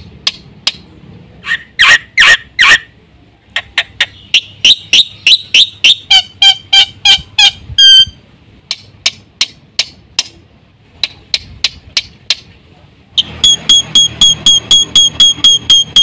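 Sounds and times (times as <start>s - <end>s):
starling singing sharp notes: 3.7s - 8.2s.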